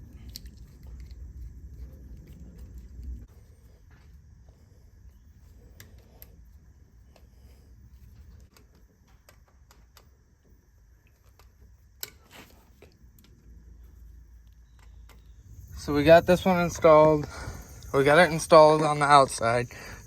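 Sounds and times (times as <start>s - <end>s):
low rumble: 15.3s - 18.6s.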